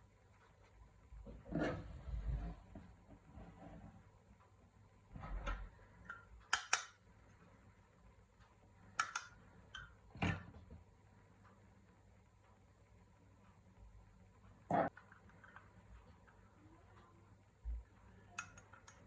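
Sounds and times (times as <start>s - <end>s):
metal parts clicking and knocking: 6.0s - 7.0s, 9.0s - 10.5s, 18.4s - 19.0s.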